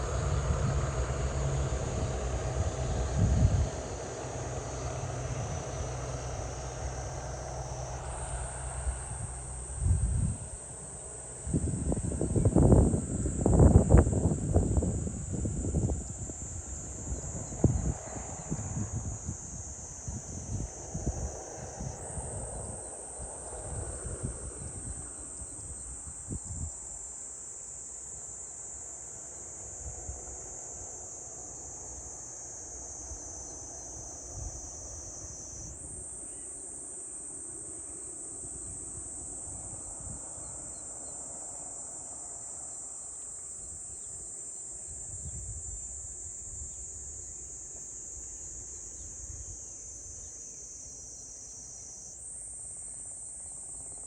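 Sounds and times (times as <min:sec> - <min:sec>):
wind rumble on microphone: 0:00.0 - 0:27.2, 0:33.0 - 0:36.4, 0:37.7 - 0:42.4, 0:43.6 - 0:50.3
high-pitched insect chorus: 0:00.0 - 0:54.0.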